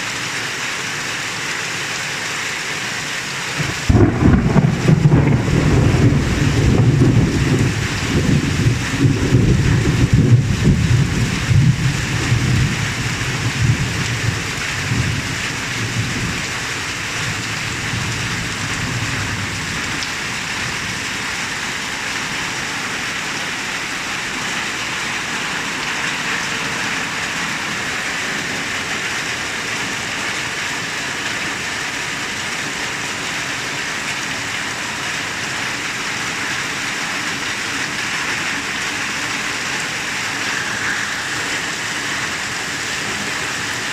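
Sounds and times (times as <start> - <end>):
heavy rain falling: 0.0 - 43.9
low rumble of thunder: 3.6 - 21.0.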